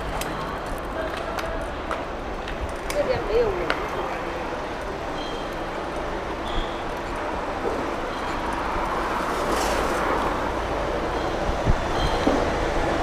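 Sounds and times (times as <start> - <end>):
rumble of passing vehicles: 0.0 - 13.0.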